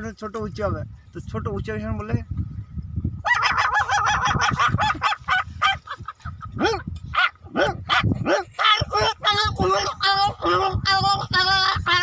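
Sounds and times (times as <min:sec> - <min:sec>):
small dog yapping: 0:07.2 - 0:08.5.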